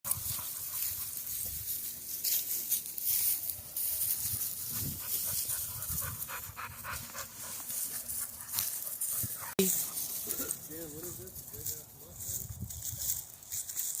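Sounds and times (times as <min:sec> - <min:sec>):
dogs panting: 0:00.1 - 0:01.9, 0:04.0 - 0:11.8
rustling and scuffling: 0:00.1 - 0:14.0.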